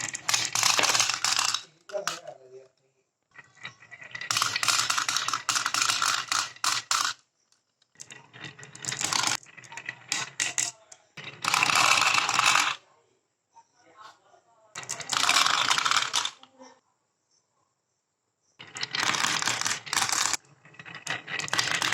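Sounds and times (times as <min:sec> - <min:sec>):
marbles rolling and clattering: 0:00.0 - 0:02.3, 0:03.3 - 0:07.2, 0:07.9 - 0:12.8, 0:14.8 - 0:16.5, 0:18.6 - 0:21.9.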